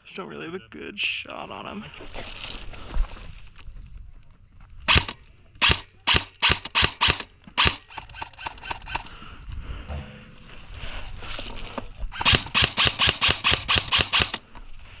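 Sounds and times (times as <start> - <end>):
airsoft gun shots: 4.9 - 9.0, 12.1 - 14.4.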